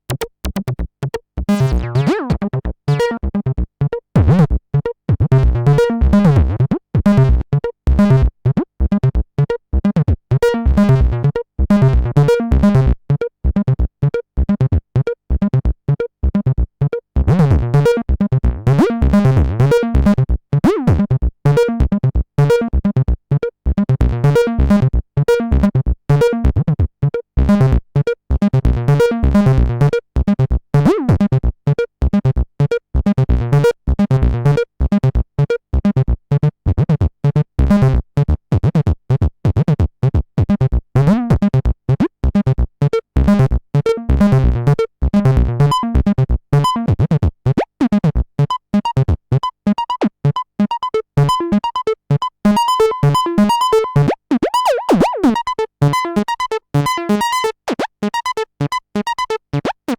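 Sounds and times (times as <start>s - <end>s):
bass synthesizer sequence: 0.0s - 9.2s, 10.4s - 13.7s, 14.4s - 23.0s, 27.4s - 31.2s, 42.4s - 59.9s.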